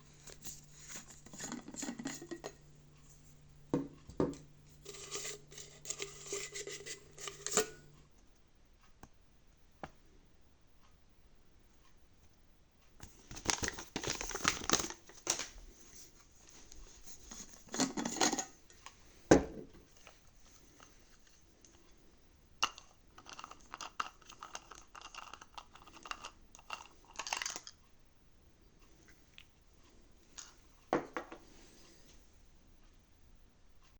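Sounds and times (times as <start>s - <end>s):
packaging crinkling and tearing: 13.3s - 15.6s.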